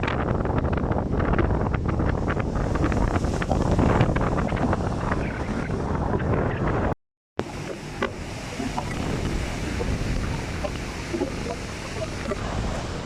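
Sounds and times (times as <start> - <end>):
rough sea: 0.0 - 13.0
wind buffeting microphone: 0.0 - 13.0.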